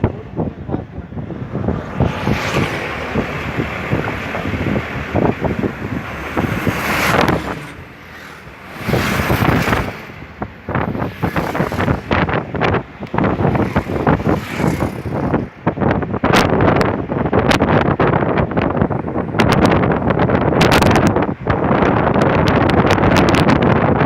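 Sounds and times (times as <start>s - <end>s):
gusty wind buffeting microphone: 0.0s - 24.0s.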